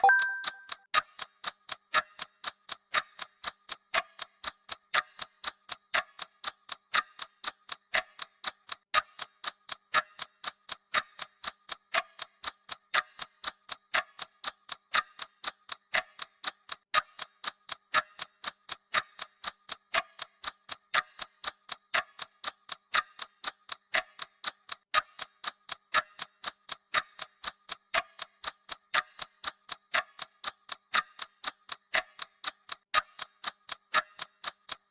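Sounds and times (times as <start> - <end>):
electronic alert beep: 0.0 - 0.7
clock ticking: 0.0 - 34.9.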